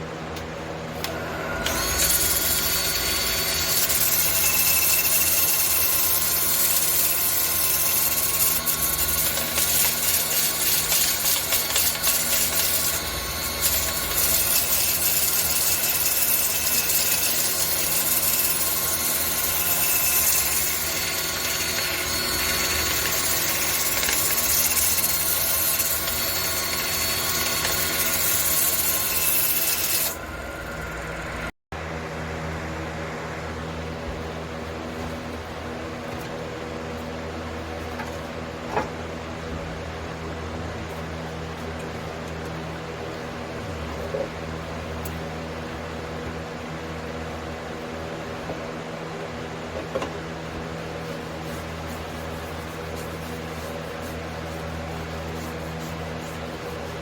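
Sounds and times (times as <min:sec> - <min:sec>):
wood lathe motor whine: 0:01.0 - 0:31.5.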